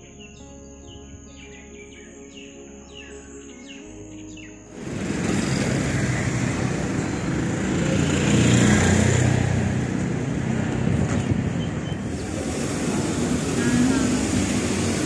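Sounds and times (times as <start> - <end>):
vehicle passing by: 4.7 - 15.0.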